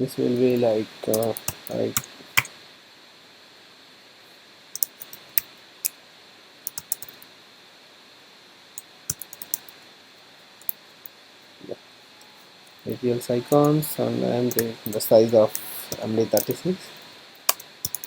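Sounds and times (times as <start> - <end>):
computer keyboard typing: 0.5 - 2.5, 4.8 - 5.5, 6.7 - 7.2, 9.1 - 9.7, 14.5 - 16.6, 17.5 - 18.0.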